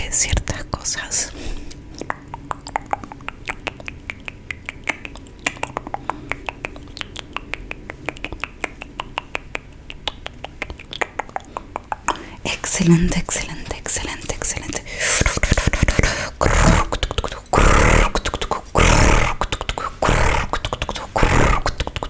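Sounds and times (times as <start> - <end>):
sharp mouth clicks: 0.0 - 22.0.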